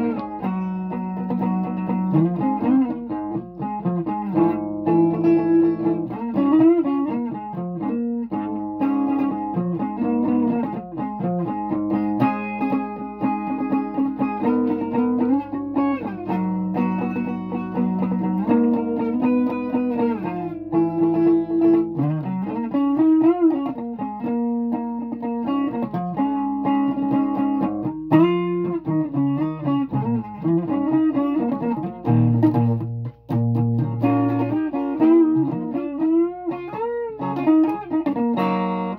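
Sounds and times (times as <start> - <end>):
guitar with bent notes: 0.0 - 38.9.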